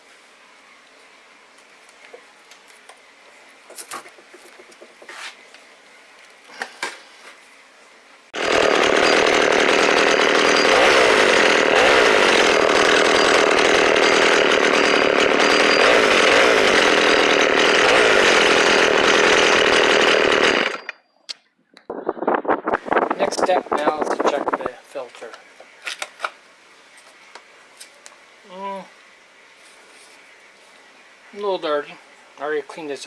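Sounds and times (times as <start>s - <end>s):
chainsaw engine idling fast: 8.4s - 20.9s.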